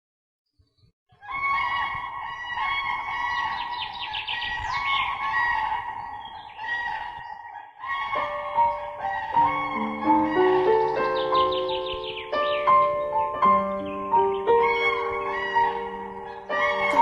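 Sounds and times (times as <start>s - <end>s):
flock of birds calling: 1.1s - 17.0s
music with held notes: 9.0s - 17.0s.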